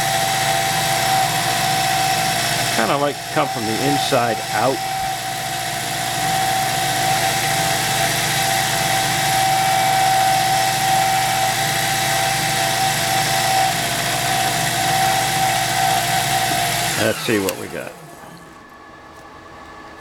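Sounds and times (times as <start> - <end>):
cutting tool on wood: 0.0 - 17.8
lathe whining: 0.0 - 19.7.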